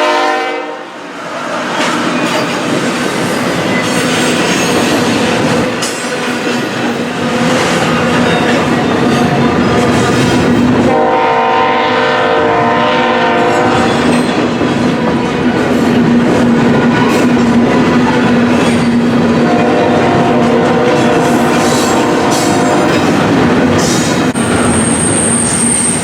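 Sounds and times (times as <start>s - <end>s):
locomotive horn: 0.0s - 1.0s, 10.8s - 14.1s, 19.4s - 23.2s
train wheels clacking: 1.5s - 11.1s, 13.2s - 26.0s.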